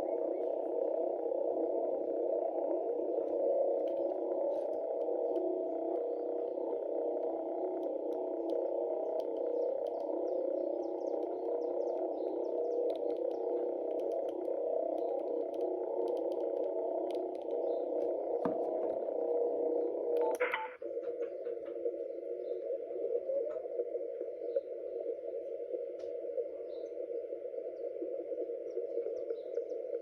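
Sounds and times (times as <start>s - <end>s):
radio interference buzzing: 0.0s - 21.1s.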